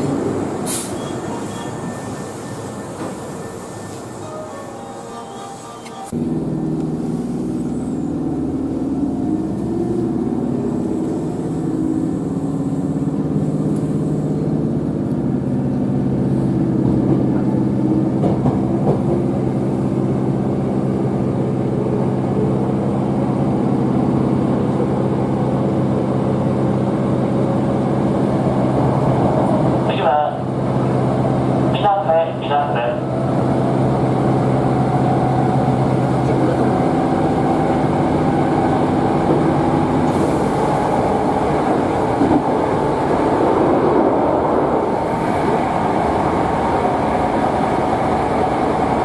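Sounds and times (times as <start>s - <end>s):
electric train rumbling: 0.0s - 49.0s.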